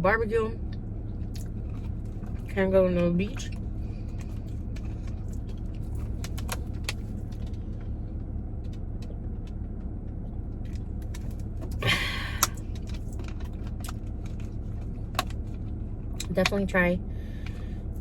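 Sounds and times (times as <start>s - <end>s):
steady low hum: 0.0s - 18.0s
chewing mouth clicks: 1.2s - 2.5s.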